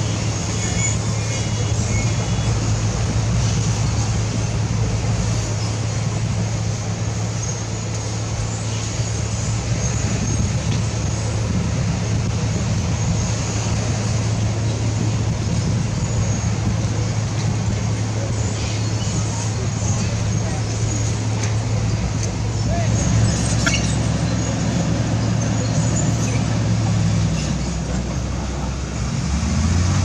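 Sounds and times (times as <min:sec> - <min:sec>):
diesel engine of heavy machinery: 0:00.0 - 0:30.0.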